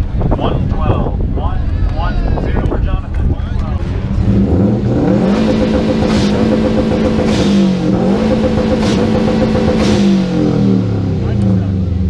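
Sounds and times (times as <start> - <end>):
car engine revving: 3.5 - 12.0.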